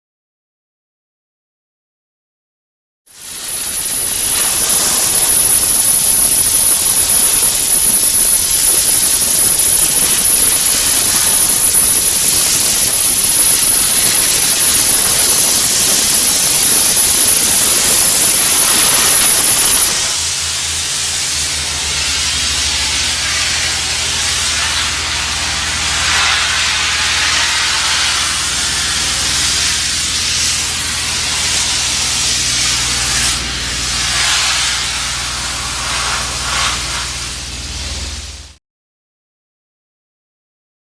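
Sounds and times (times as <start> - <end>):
sandblaster air rush: 3.1 - 38.5
high steady whine: 3.1 - 38.6
low hum: 3.3 - 30.0.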